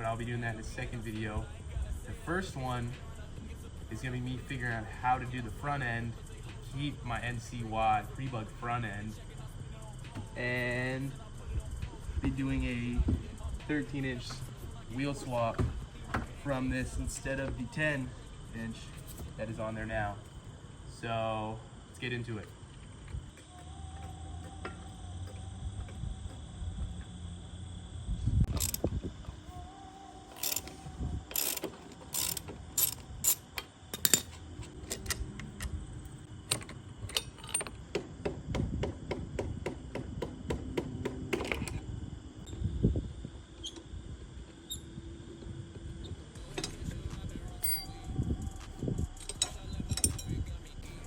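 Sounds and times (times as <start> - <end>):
metal tools clanking: 28.5 - 28.9, 30.3 - 35.7, 47.6 - 48.0, 49.1 - 50.6
socket ratchet clicking: 28.5 - 28.9, 30.4 - 35.8.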